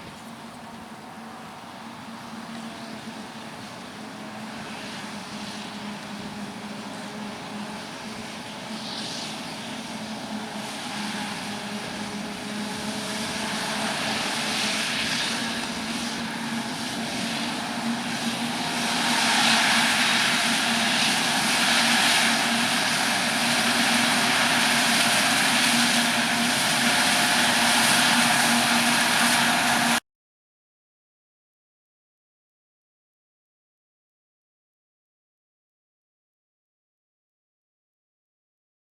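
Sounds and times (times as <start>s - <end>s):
diesel engine humming: 0.0s - 30.0s.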